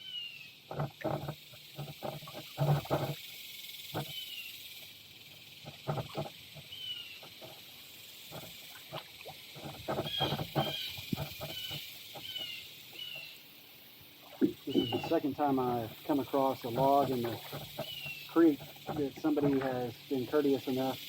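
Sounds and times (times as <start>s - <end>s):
insects hissing: 0.0s - 21.0s
paddle knocking against kayak: 0.7s - 3.2s, 5.6s - 7.7s, 8.3s - 13.2s, 14.2s - 21.0s.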